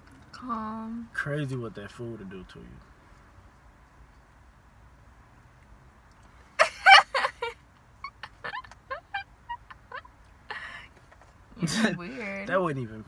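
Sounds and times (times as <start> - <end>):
high squeaky yelps: 8.0 - 10.1.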